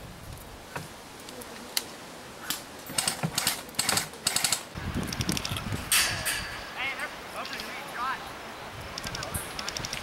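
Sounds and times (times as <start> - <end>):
airsoft gun full-auto bursts: 3.0 - 4.7.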